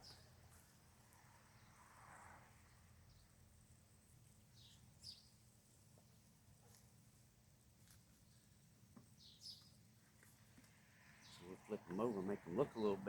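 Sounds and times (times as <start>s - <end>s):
faint bird chirps: 0.0s - 0.4s, 1.2s - 6.2s, 9.1s - 9.8s, 11.0s - 13.0s.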